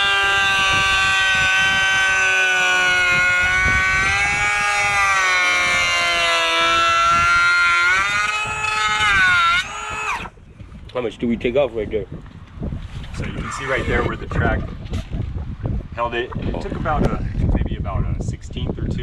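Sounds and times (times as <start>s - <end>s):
electric planer whining on wood: 0.0s - 10.3s.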